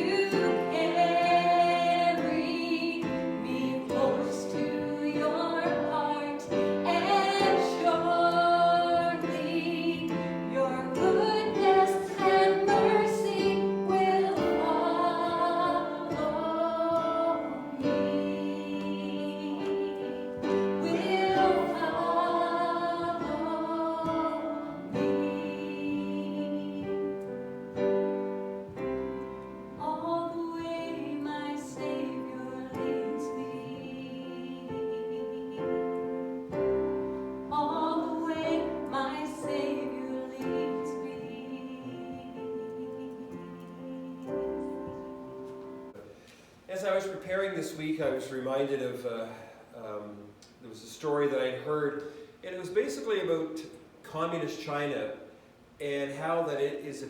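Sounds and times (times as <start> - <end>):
person singing slow song: 0.0 - 27.5
instrumental accompaniment: 0.0 - 46.2.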